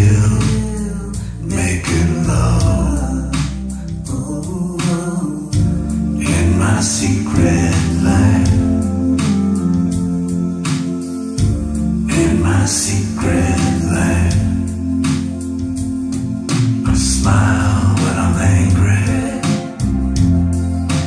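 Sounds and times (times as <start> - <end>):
song over loudspeakers: 0.0 - 21.0.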